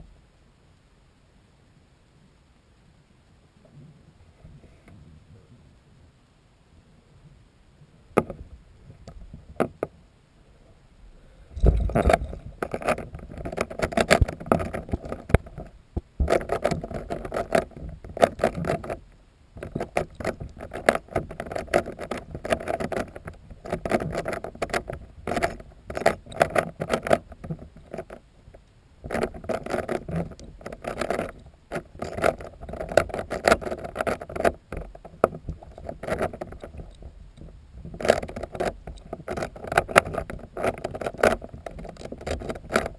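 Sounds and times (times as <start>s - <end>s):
cube clicking and rattling underwater: 11.6s - 42.9s.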